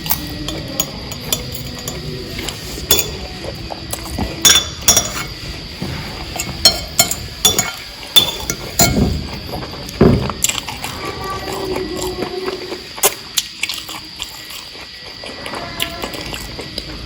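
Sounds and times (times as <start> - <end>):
cutlery clinking against a plate: 0.0 - 5.4, 6.3 - 10.7.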